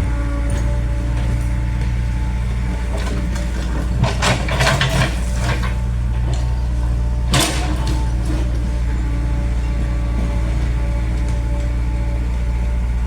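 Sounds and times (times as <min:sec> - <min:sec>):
excavator diesel engine running: 0:00.0 - 0:13.0
clattering: 0:02.5 - 0:11.7.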